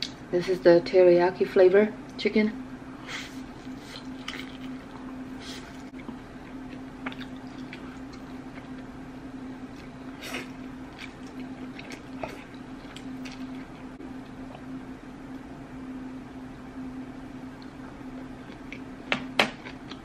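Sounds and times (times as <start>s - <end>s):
low electrical hum: 0.0s - 20.0s
person chewing food: 3.6s - 9.0s, 9.6s - 14.8s, 17.5s - 18.9s, 19.5s - 20.0s.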